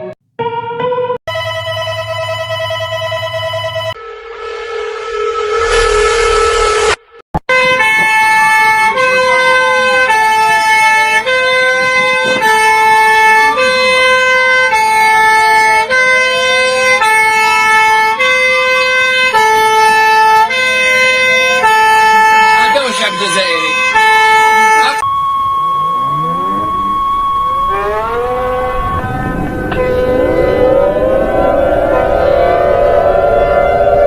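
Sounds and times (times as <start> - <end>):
siren wail: 0.0 - 34.0
two alternating alarm tones: 1.3 - 7.0, 22.4 - 34.0
harsh alarm buzzing: 21.7 - 34.0.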